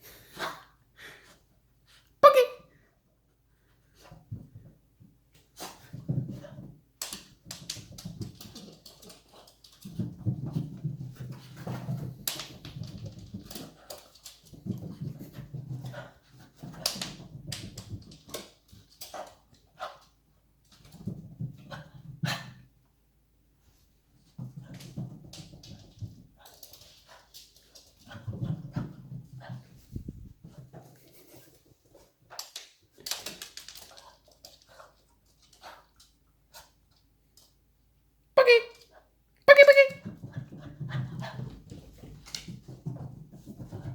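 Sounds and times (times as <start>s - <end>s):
dog claws tapping on floor: 5.3s - 19.9s, 30.5s - 37.6s.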